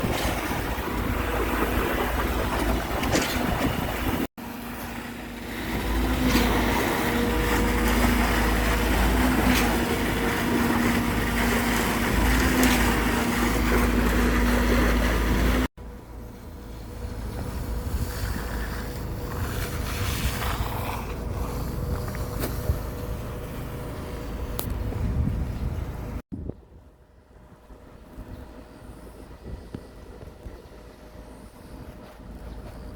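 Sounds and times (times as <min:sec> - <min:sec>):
wind on microphone: 0:00.0 - 0:04.3, 0:24.4 - 0:31.0
quieter engine rumble: 0:00.0 - 0:32.9
vehicle engine rumbling: 0:00.0 - 0:32.9.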